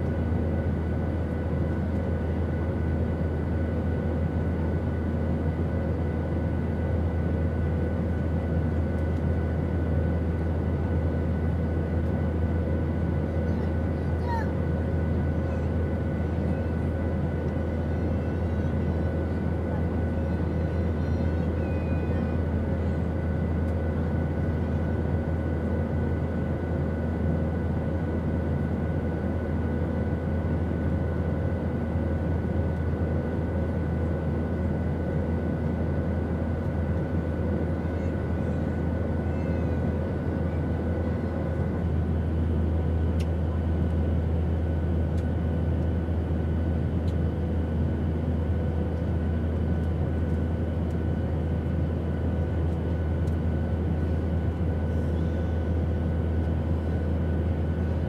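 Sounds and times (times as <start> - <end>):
airplane cabin drone: 0.0 - 58.0.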